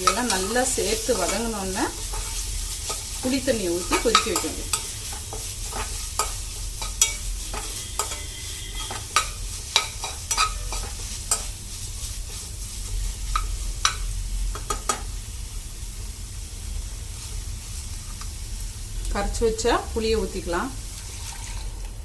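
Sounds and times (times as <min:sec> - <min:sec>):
utensil scraping and clicking on pan: 0:00.0 - 0:11.5
food sizzling in oil: 0:00.0 - 0:22.0.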